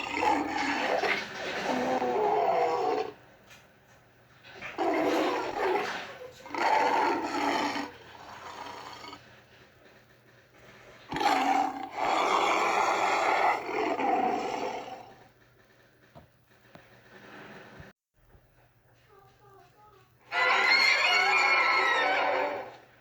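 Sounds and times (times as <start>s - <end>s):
monster roaring: 0.0s - 3.2s, 4.8s - 9.2s, 11.1s - 15.3s.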